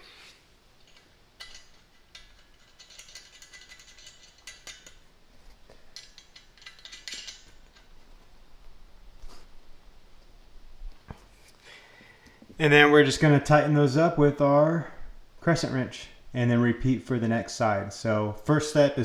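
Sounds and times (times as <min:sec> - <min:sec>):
metallic clicking of nuts on bolts: 0:00.8 - 0:08.0.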